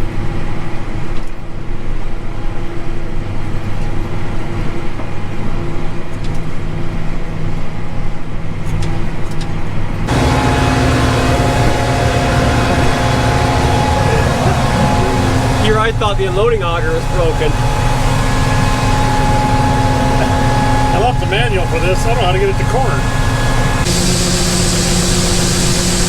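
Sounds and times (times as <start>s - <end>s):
combine harvester engine hum: 10.1s - 26.0s.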